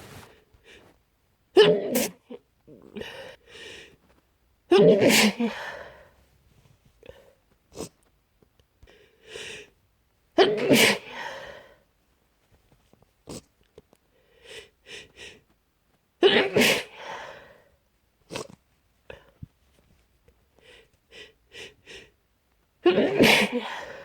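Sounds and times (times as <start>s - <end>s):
short sharp sniffs: 0.0s - 0.9s
person sneezing: 4.7s - 5.6s, 22.9s - 23.8s.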